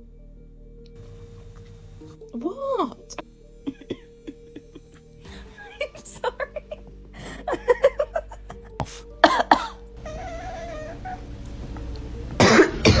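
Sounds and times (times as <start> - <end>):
cat coughing: 9.2 - 11.8, 12.4 - 13.0.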